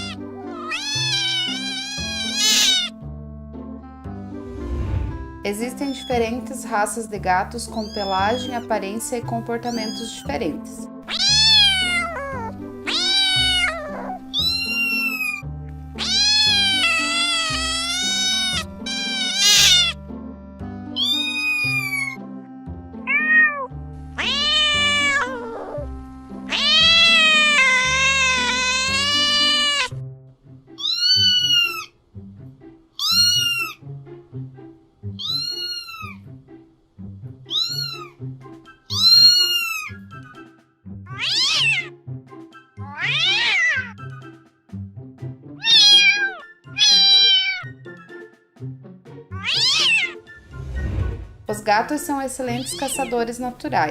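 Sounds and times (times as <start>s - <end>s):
cats and kittens meowing: 0.0s - 3.0s, 5.9s - 6.2s, 7.7s - 8.7s, 9.7s - 10.3s, 11.0s - 20.0s, 20.9s - 22.2s, 23.0s - 25.9s, 26.5s - 30.0s, 30.8s - 32.0s, 33.0s - 33.8s, 35.1s - 36.2s, 37.5s - 38.2s, 38.9s - 40.4s, 41.1s - 42.0s, 42.8s - 44.2s, 45.6s - 47.8s, 49.3s - 50.2s, 52.5s - 53.3s
background music: 0.0s - 53.9s.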